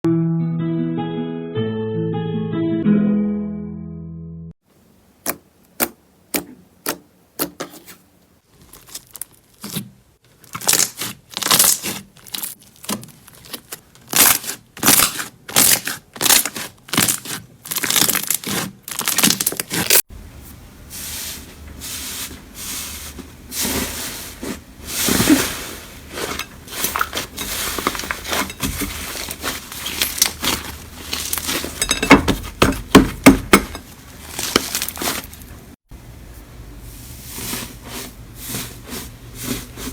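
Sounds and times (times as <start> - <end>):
slime crackling and squishing: 8.4 - 20.0, 21.9 - 35.7.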